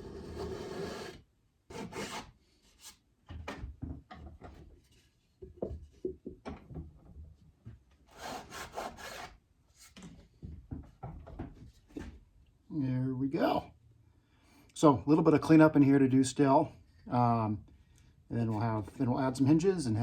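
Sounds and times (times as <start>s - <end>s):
hand saw cutting wood: 0.0s - 2.4s, 8.1s - 9.4s.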